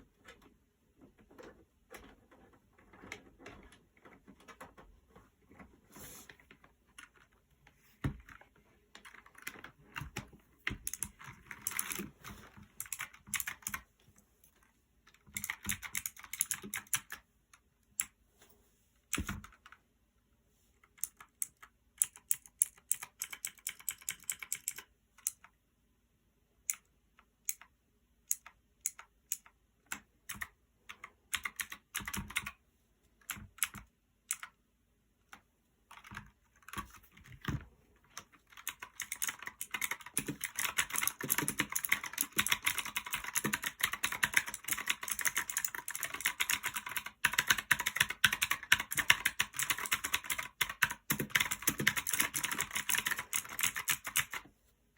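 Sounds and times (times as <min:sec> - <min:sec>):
mechanical keyboard typing: 0:09.0 - 0:13.9, 0:15.1 - 0:17.3, 0:19.1 - 0:19.8, 0:20.8 - 0:25.6, 0:26.7 - 0:32.6, 0:33.2 - 0:34.6, 0:35.3 - 0:54.4.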